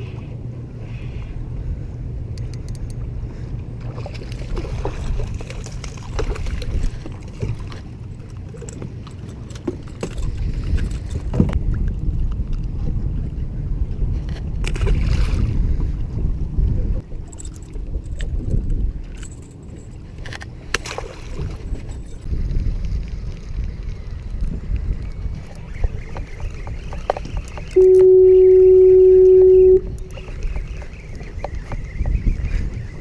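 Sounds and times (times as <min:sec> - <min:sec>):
boat engine rumble: 0:00.0 - 0:33.0
gear rattling and knocking: 0:08.4 - 0:11.6.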